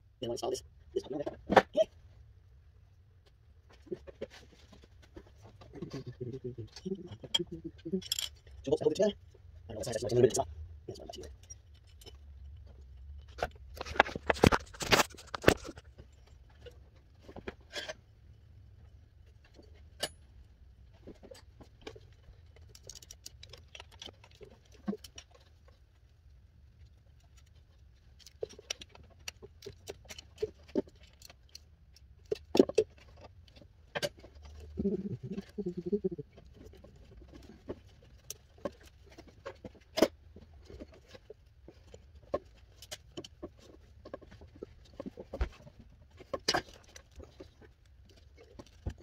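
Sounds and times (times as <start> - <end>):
tools clinking on metal parts: 7.3 - 8.5
knocking and scraping: 11.1 - 18.0, 28.2 - 49.0.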